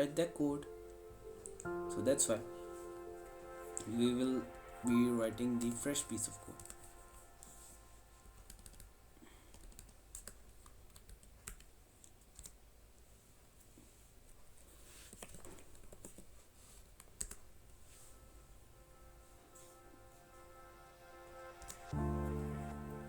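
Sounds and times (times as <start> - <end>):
typing on keyboard: 8.4 - 8.9, 9.5 - 12.6, 17.0 - 17.5.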